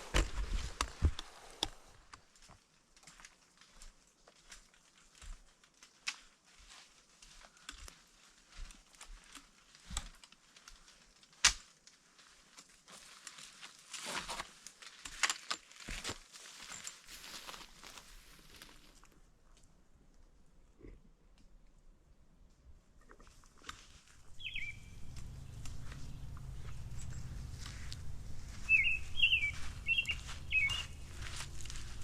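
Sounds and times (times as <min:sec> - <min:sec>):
footsteps crunching on forest trail: 0:00.0 - 0:19.2, 0:23.8 - 0:32.0
twig snapping: 0:09.2 - 0:11.7.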